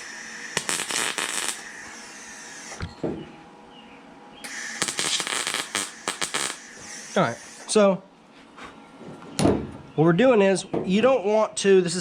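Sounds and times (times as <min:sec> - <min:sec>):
welding crackle: 0:00.0 - 0:02.8, 0:04.4 - 0:07.6.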